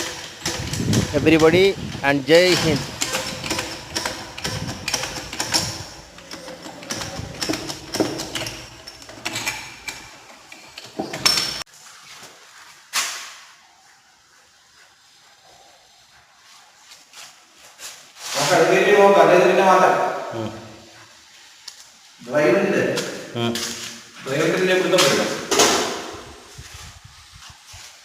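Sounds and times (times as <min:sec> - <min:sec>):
metal tools clinking on motor: 0:00.0 - 0:01.6, 0:02.2 - 0:11.6.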